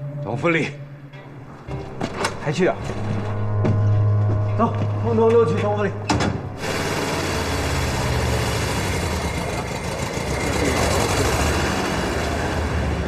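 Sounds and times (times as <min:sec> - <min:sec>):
engine running with low rumble: 0:06.5 - 0:13.0.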